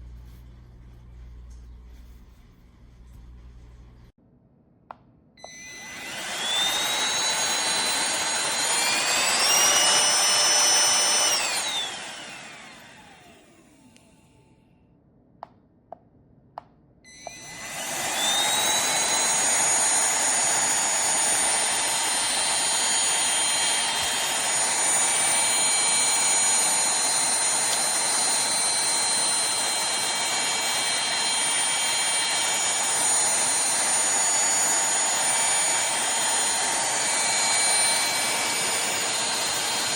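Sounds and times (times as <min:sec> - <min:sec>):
handheld vacuum motor whining: 0:05.4 - 0:14.4, 0:17.1 - 0:39.9.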